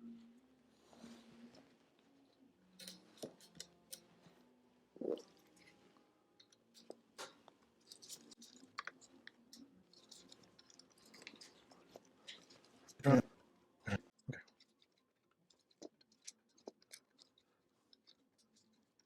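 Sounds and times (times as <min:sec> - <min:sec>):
small parts clicking and scraping: 0:02.8 - 0:04.1, 0:06.4 - 0:13.0.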